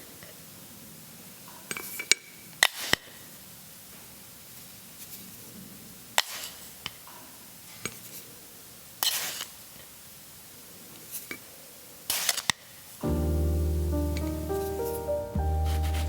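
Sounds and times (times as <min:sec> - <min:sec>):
scraping rustle: 0:15.6 - 0:16.0.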